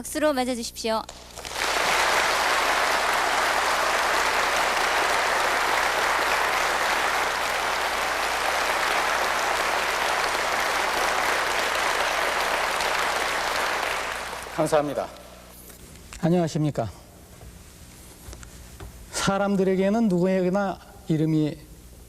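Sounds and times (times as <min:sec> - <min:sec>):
audience applauding: 0:01.2 - 0:15.3.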